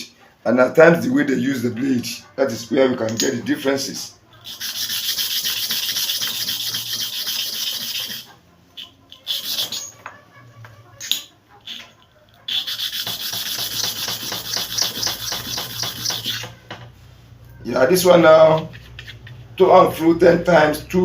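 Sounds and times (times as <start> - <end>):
blade scraping on sharpening surface: 4.4 - 8.3, 9.1 - 10.1, 12.5 - 16.6, 18.5 - 19.5.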